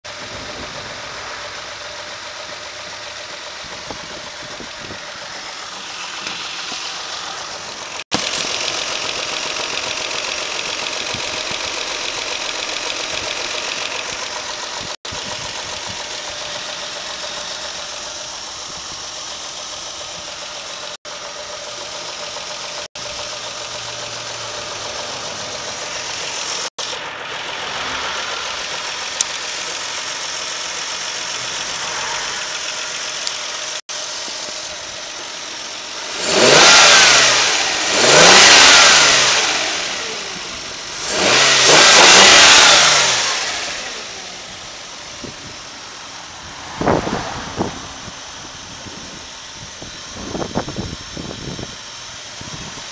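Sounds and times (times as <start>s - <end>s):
car engine idling with knocking: 0.0s - 52.9s
engine revving: 0.1s - 52.8s.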